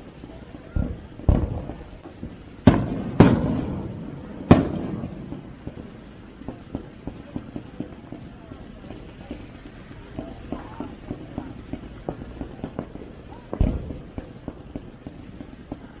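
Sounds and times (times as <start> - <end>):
fireworks shells booming: 0.8 - 8.2
crackling pops: 1.3 - 7.5.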